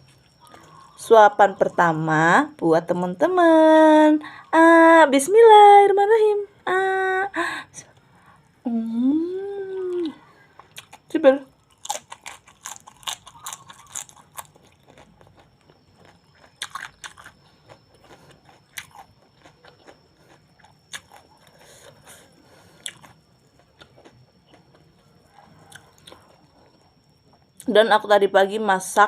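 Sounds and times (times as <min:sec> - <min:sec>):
person chewing crunchy food: 0:00.0 - 0:01.0, 0:10.2 - 0:27.6.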